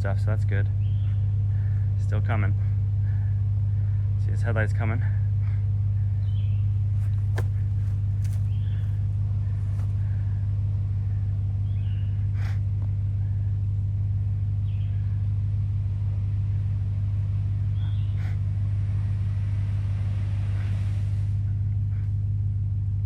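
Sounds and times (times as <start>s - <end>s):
truck engine idling: 0.0s - 12.4s.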